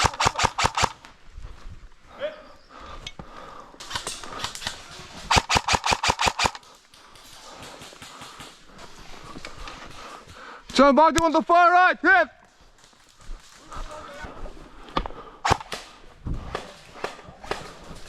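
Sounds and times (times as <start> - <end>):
airsoft guns firing: 0.0 - 1.0, 3.8 - 6.7, 15.4 - 17.8.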